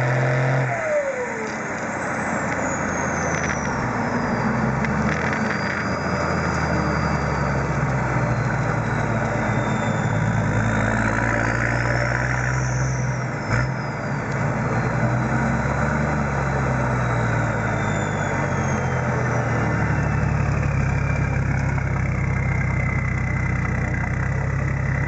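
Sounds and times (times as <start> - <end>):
diesel engine running: 0.0 - 25.0
turbo whistle: 2.6 - 15.6, 16.8 - 23.2.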